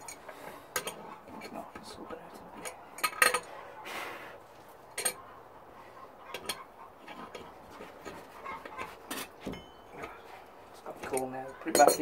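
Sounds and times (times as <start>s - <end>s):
metal tools clinking and knocking: 0.0s - 1.6s, 2.6s - 3.5s, 4.9s - 5.2s, 6.4s - 10.2s, 10.9s - 12.0s.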